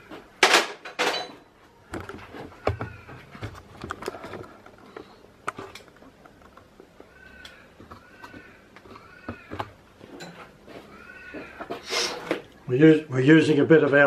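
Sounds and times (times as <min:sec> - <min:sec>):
cat meowing faintly: 0:10.8 - 0:12.1
loud hissing bursts: 0:11.8 - 0:12.3.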